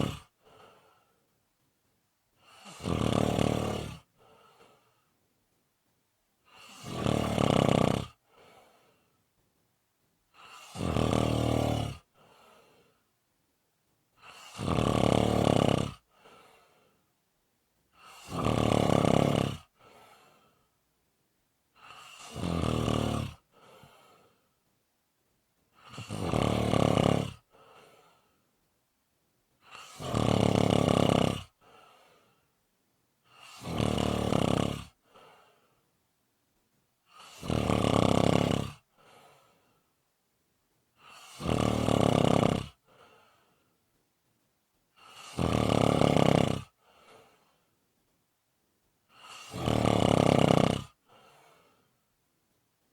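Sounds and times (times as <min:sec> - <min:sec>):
person snoring: 0:00.0 - 0:01.0, 0:02.4 - 0:04.8, 0:06.5 - 0:08.9, 0:10.4 - 0:12.8, 0:14.2 - 0:16.8, 0:18.0 - 0:20.5, 0:21.8 - 0:24.4, 0:25.8 - 0:28.3, 0:29.6 - 0:32.2, 0:33.3 - 0:35.4, 0:37.1 - 0:39.6, 0:41.0 - 0:43.2, 0:45.0 - 0:47.5, 0:49.1 - 0:51.8
soft breath: 0:00.0 - 0:01.4, 0:04.0 - 0:05.2, 0:08.2 - 0:09.3, 0:12.0 - 0:13.2, 0:16.0 - 0:17.2, 0:19.6 - 0:20.8, 0:23.4 - 0:24.6, 0:27.4 - 0:28.5, 0:31.5 - 0:32.6, 0:35.0 - 0:36.0, 0:38.8 - 0:40.0, 0:42.8 - 0:43.8, 0:46.7 - 0:47.8, 0:50.9 - 0:52.1.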